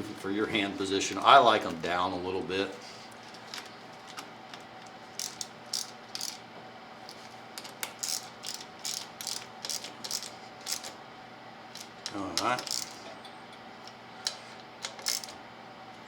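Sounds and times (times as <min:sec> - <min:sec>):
steady low hum: 0:00.0 - 0:16.0
ratchet wrench clicking: 0:05.2 - 0:06.4, 0:08.0 - 0:10.9, 0:11.8 - 0:13.0, 0:14.8 - 0:15.4.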